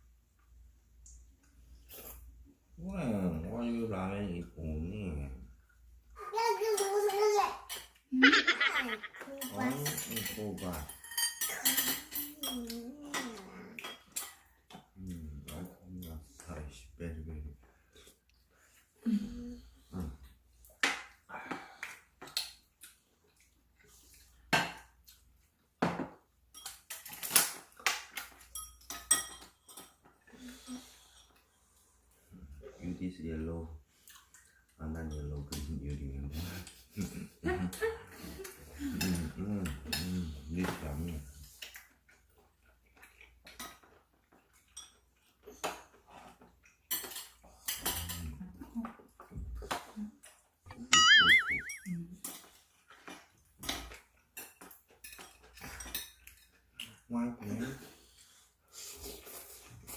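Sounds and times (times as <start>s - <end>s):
cutlery and dishes clinking: 6.7s - 8.1s, 9.2s - 16.4s, 25.8s - 31.6s, 43.0s - 48.4s, 52.2s - 57.1s.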